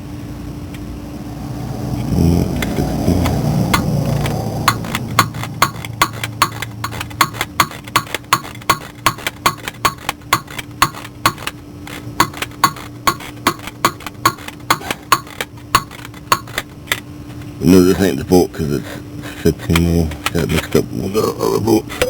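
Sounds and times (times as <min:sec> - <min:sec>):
faint steady hum: 0:00.0 - 0:22.0
hand ratchet clicking: 0:02.6 - 0:17.0.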